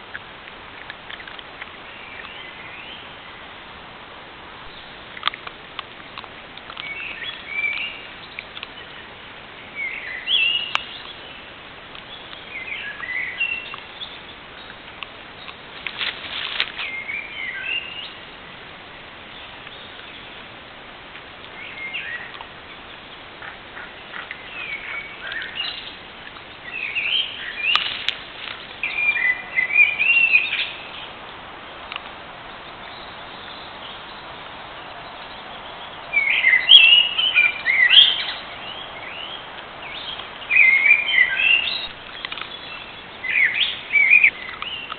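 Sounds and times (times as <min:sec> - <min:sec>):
songbirds chirping and warbling: 0:00.0 - 0:44.9
steady hiss: 0:00.0 - 0:44.9
faint clicks: 0:05.1 - 0:08.8, 0:31.8 - 0:32.2, 0:41.8 - 0:42.9.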